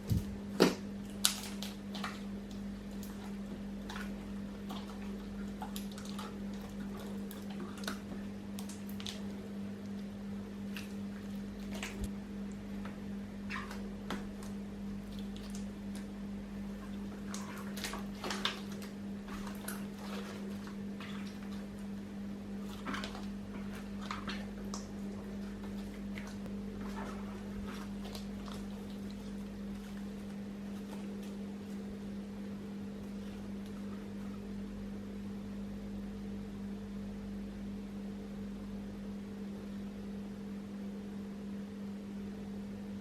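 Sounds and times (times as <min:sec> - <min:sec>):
steady low hum: 0:00.0 - 0:43.0
slime squishing and crackling: 0:13.4 - 0:32.1.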